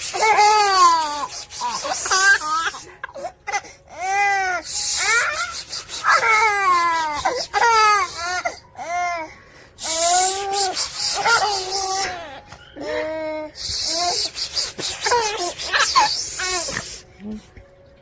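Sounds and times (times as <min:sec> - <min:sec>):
baby squealing: 0:00.0 - 0:17.0
baby gasping: 0:13.6 - 0:17.1.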